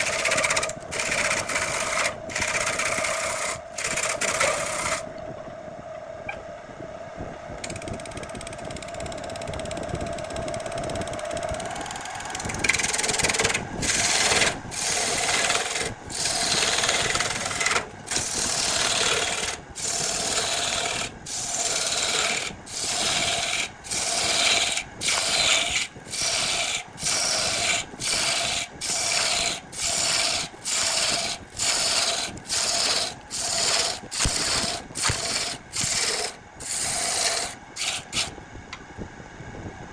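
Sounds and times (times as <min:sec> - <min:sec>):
loud rasping strokes: 0:00.0 - 0:05.0, 0:12.4 - 0:38.4
wood scraping on lathe: 0:00.0 - 0:05.1, 0:12.3 - 0:38.4
lathe humming: 0:00.0 - 0:06.1, 0:07.6 - 0:38.4.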